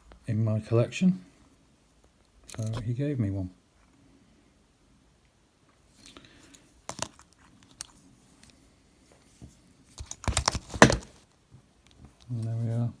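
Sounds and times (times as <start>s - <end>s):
padlock rattling: 10.0s - 11.0s.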